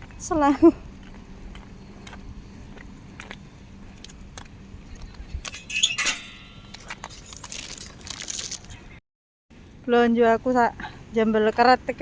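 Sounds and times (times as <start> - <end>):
bicycle clinking and rattling: 5.4 - 8.8.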